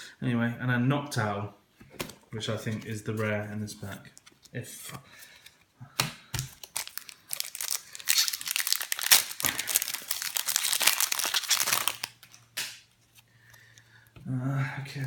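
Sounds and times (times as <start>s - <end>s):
packaging crinkling and tearing: 6.4s - 12.8s.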